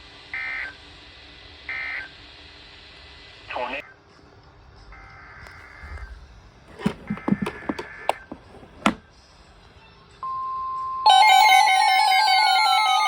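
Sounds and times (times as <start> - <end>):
sharp clicks and knocks: 6.7 - 9.0.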